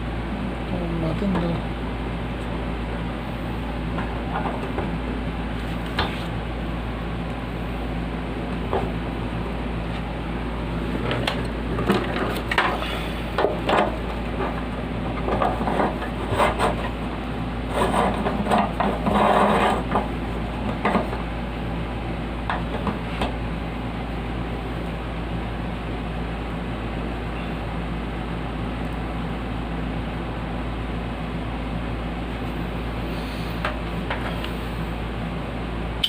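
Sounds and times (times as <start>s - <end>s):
steady low hum: 0.0s - 36.0s
fan parts clicking and knocking: 3.8s - 5.0s, 5.6s - 6.4s, 8.4s - 10.1s, 10.9s - 21.4s, 22.4s - 23.4s, 33.6s - 34.5s
rubbing and rustling: 17.6s - 20.1s.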